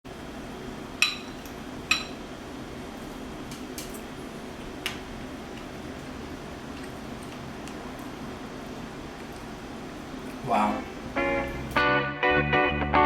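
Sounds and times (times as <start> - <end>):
steady low hum: 0.1 - 12.8
dishware clinking: 1.0 - 2.2.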